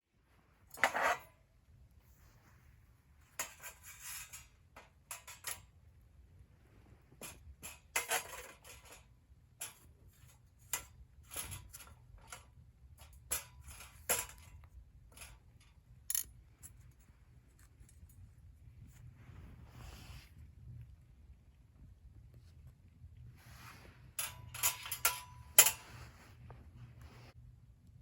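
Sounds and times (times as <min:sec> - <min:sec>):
camping gear clinking and rustling: 0:23.5 - 0:27.4.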